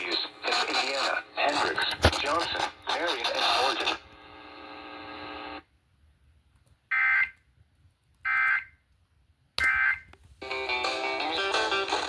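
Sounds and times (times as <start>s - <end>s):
music: 10.4s - 12.0s.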